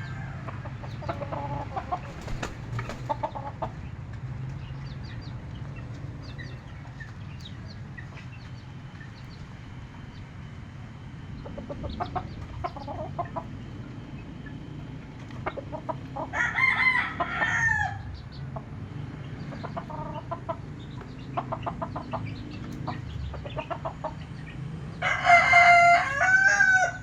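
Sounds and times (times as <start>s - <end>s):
rooster crowing: 0.0s - 0.8s, 16.2s - 18.1s, 25.0s - 27.0s
chickens clucking: 0.0s - 27.0s.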